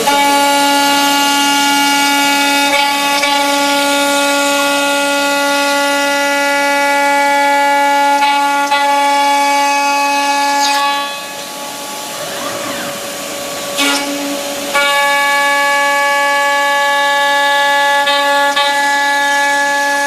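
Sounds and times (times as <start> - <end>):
machine high-pitched whine: 0.0 - 20.0.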